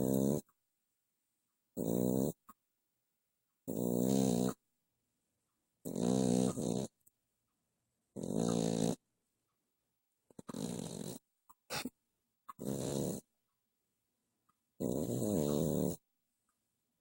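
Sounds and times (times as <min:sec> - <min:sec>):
cat snoring: 0:00.0 - 0:00.5, 0:01.8 - 0:02.4, 0:03.7 - 0:04.6, 0:05.8 - 0:07.0, 0:08.1 - 0:09.0, 0:10.4 - 0:11.2, 0:12.5 - 0:13.3, 0:14.8 - 0:16.0.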